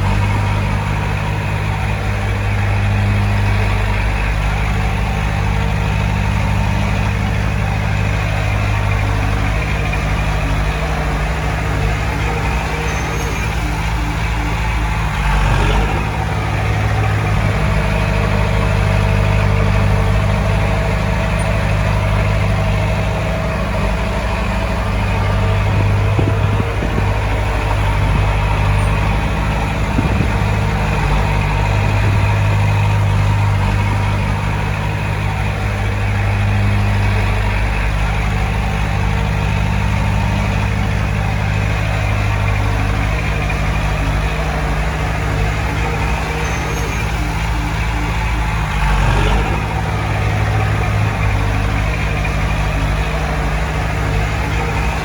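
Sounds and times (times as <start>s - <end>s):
heavy diesel engine droning: 0.0s - 55.0s.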